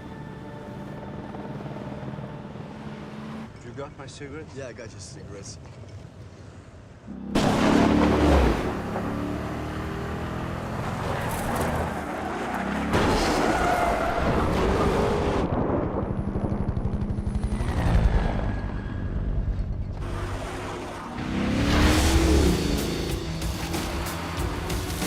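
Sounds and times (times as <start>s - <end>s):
car engines revving: 0.8s - 3.8s, 7.0s - 15.5s, 17.4s - 25.0s.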